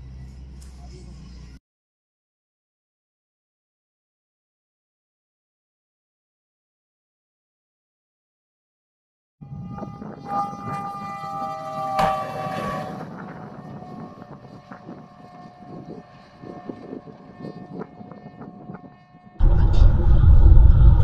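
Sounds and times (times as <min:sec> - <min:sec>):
horn sounding a chord: 0:09.4 - 0:15.6.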